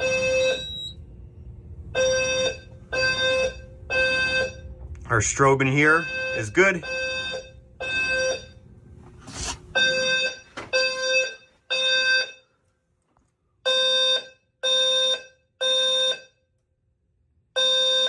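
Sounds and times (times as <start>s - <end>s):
fire alarm horn tones: 0.0s - 1.2s, 1.9s - 8.8s, 9.7s - 12.6s, 13.6s - 16.6s, 17.5s - 18.0s.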